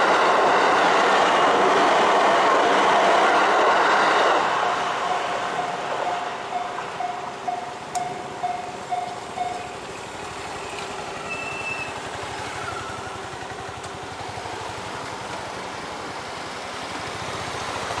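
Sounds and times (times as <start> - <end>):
traffic noise: 0.0 - 18.0
level crossing alarm ringing: 5.0 - 10.1.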